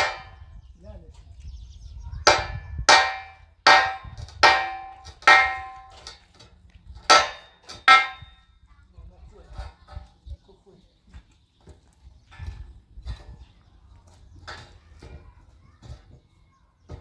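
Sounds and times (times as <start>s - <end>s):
sharp ringing metal strikes: 2.3s - 6.0s, 7.1s - 8.3s.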